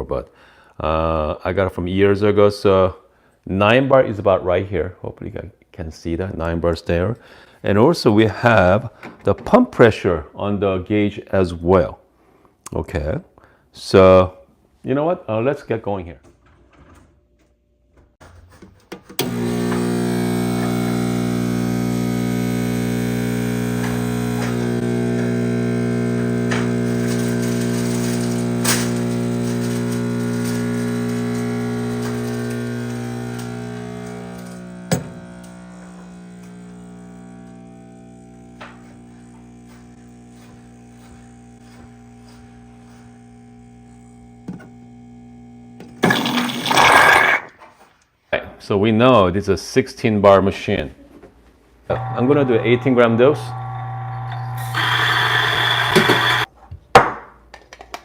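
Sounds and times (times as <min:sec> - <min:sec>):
espresso machine pump humming: 0:19.2 - 0:47.0, 0:51.9 - 0:56.5.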